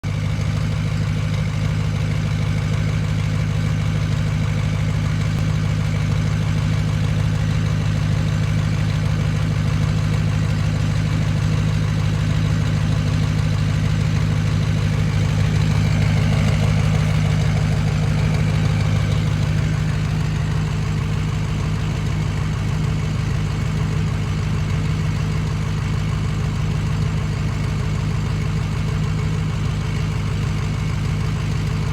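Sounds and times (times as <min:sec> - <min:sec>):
diesel engine idling: 0:00.0 - 0:31.9.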